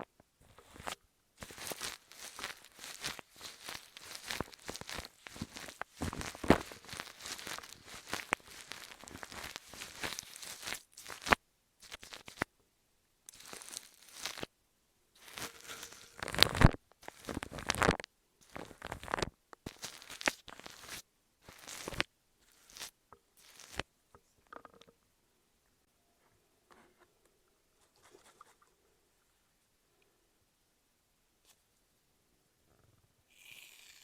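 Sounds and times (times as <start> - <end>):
crinkling bursts: 0.4 - 12.5, 13.3 - 14.5, 15.2 - 23.9.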